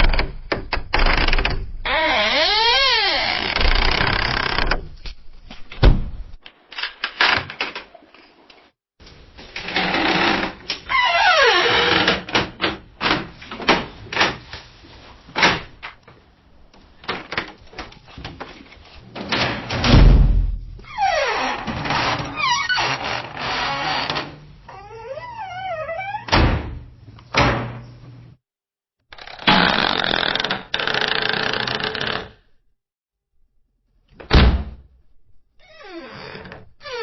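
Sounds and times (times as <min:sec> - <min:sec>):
door clicks and knocks: 0:00.0 - 0:04.9, 0:34.2 - 0:34.8
door hinges creaking: 0:00.0 - 0:04.9, 0:09.6 - 0:13.3, 0:20.8 - 0:27.8, 0:29.1 - 0:32.4, 0:35.6 - 0:37.0.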